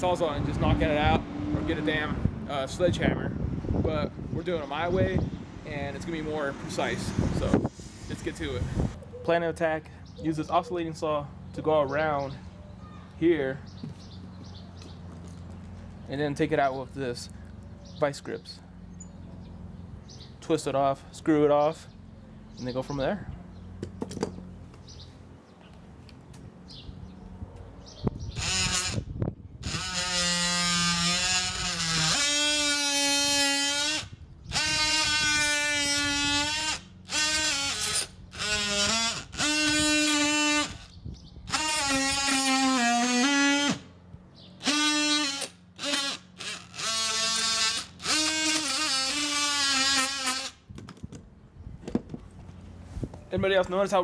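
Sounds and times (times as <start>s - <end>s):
oscillating multi-tool cutting wood: 28.4s - 40.9s, 41.5s - 43.8s, 44.6s - 50.6s.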